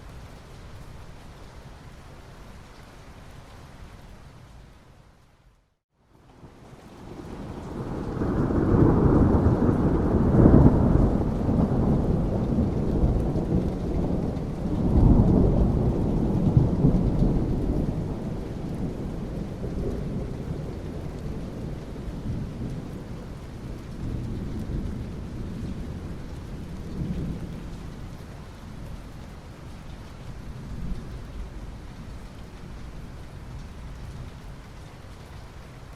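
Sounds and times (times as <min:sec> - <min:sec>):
steady rain: 0:00.0 - 0:35.9
thunder rumbling: 0:07.0 - 0:28.1.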